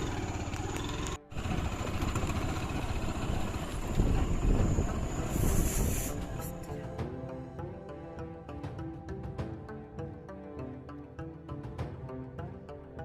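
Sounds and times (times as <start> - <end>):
vehicle engine rumbling: 0.0 - 6.7.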